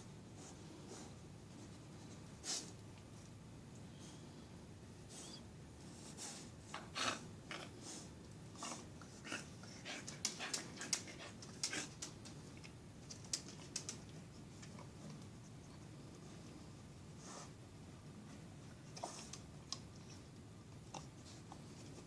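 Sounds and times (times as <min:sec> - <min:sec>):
dog panting: 0:07.9 - 0:12.2.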